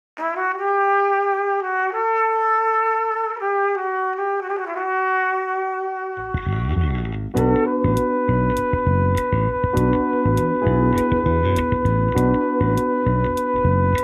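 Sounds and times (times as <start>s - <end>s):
deep low sound: 6.2s - 14.0s
slow melody of held notes: 6.3s - 14.0s.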